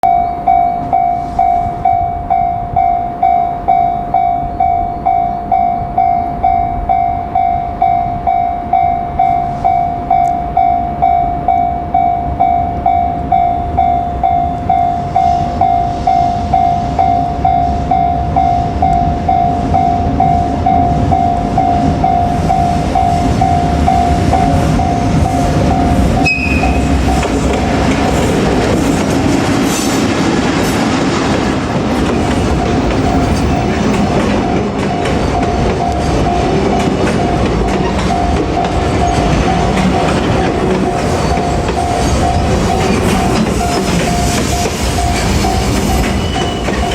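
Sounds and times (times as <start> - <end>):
freight train passing: 0.0 - 46.9
level crossing warning bell: 0.0 - 46.9
train wheels clickety-clack: 15.0 - 46.9
brief high beep: 26.2 - 27.2.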